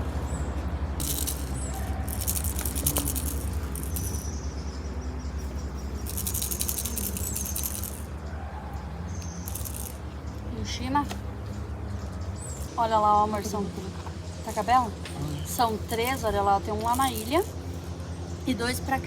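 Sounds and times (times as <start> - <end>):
high-pitched rattling buzz: 1.0 - 8.3, 9.1 - 10.3, 14.2 - 19.0.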